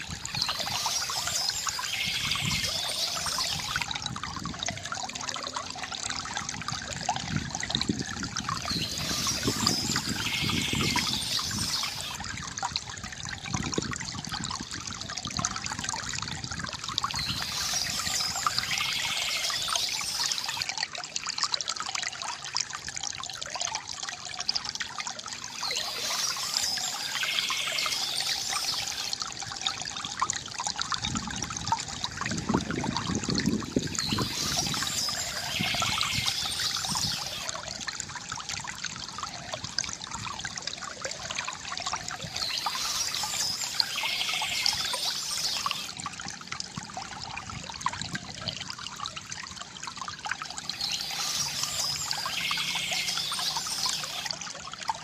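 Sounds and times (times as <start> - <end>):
birds chirping: 0.0 - 3.8, 8.5 - 12.2, 17.1 - 20.6, 25.5 - 29.2, 33.6 - 37.5, 42.1 - 45.9, 50.6 - 54.3
water trickling from fountain spout: 0.0 - 55.0.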